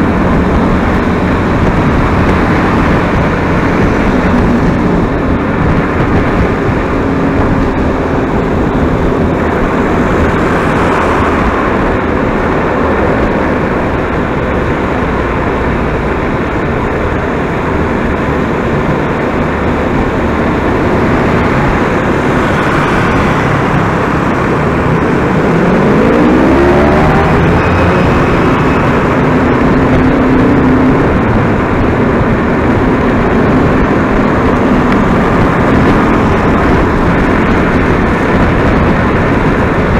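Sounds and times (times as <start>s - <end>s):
engine accelerating: 0.0s - 39.9s
vehicle engine and road noise: 0.0s - 39.9s.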